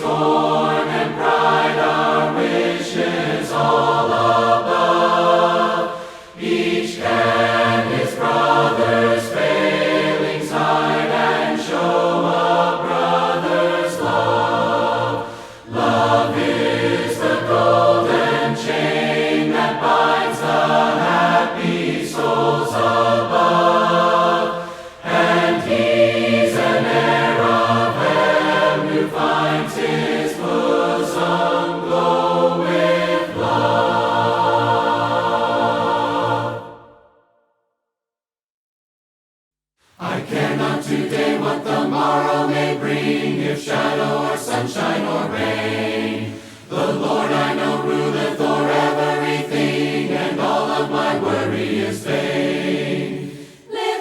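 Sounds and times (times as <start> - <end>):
group singing a hymn a cappella: 0.0 - 37.2, 40.0 - 54.0.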